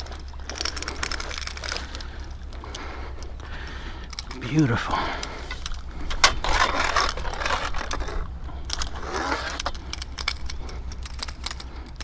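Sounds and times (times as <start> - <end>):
metallic clicks and rattles: 4.1 - 12.0
wind buffeting microphone: 4.8 - 11.8.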